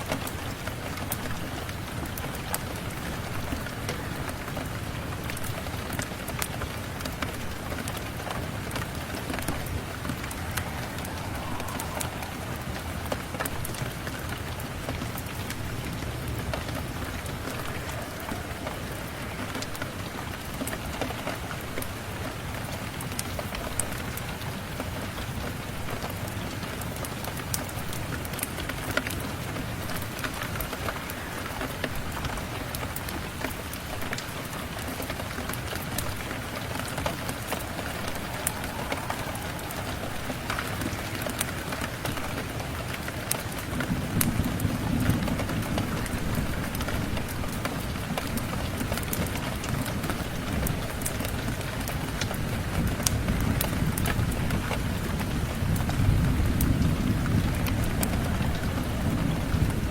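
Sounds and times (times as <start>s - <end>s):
rain pattering: 0.0s - 59.9s.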